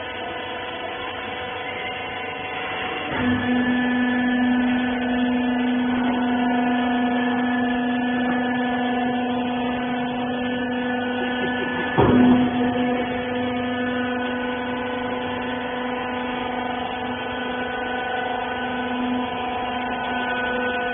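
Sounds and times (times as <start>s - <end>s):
baler motor and pump humming: 0.0s - 20.9s
loud clunk: 11.2s - 13.0s.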